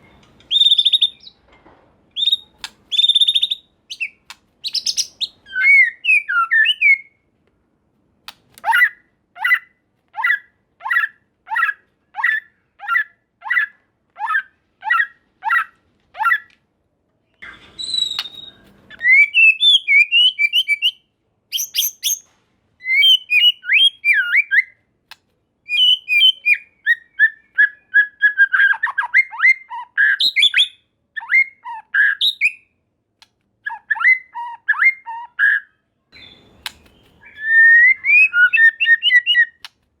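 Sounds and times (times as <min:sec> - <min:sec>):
bird whistling song: 0:00.0 - 0:01.4, 0:02.1 - 0:07.2, 0:17.3 - 0:24.8, 0:25.7 - 0:32.8, 0:33.6 - 0:39.7.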